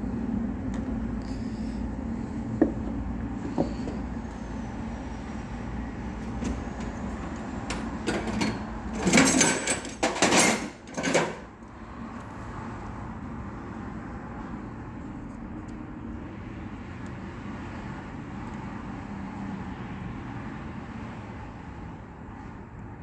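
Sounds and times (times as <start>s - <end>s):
steady low hum: 0.0s - 9.0s.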